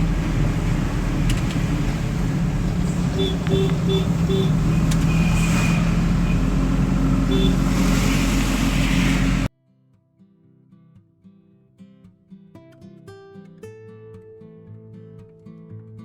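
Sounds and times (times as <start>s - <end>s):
car engine and road noise: 0.0s - 9.5s
short beeps: 3.2s - 4.5s.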